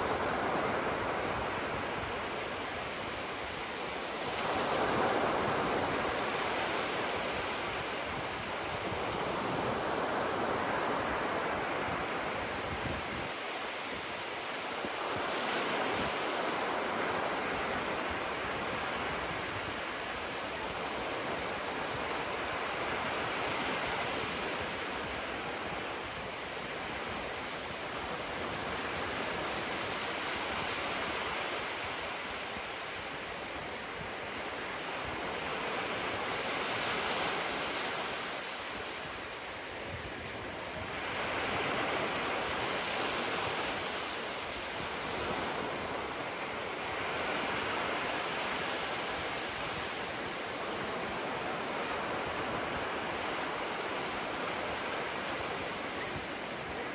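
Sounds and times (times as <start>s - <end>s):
small waves breaking on shore: 0.0s - 56.9s.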